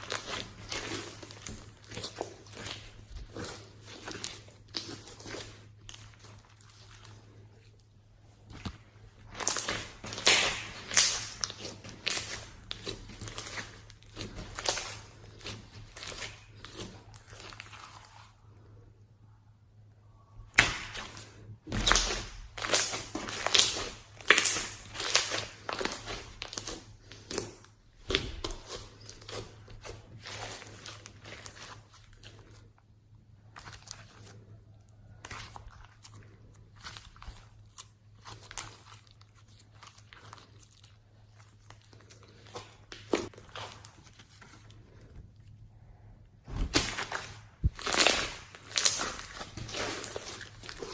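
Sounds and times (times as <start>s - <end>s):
slime squeezed crackling pops: 9.4s - 12.4s.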